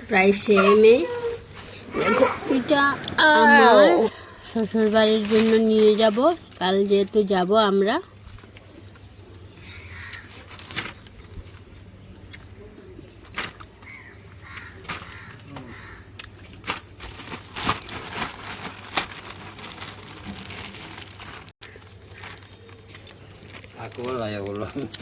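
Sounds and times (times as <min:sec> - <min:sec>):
crow cawing: 0:09.7 - 0:10.4, 0:13.8 - 0:16.2.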